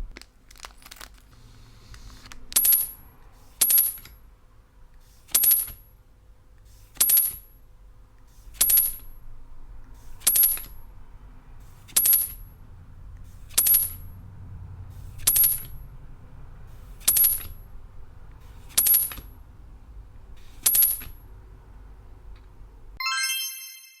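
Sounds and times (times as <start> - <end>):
chime of stacked notes: 23.0 - 24.0.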